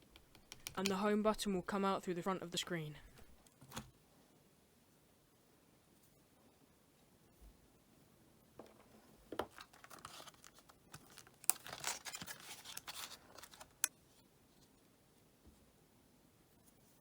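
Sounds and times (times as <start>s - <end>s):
sharp plastic clicks: 0.0s - 1.0s
adhesive tearing and scratching: 9.5s - 13.9s.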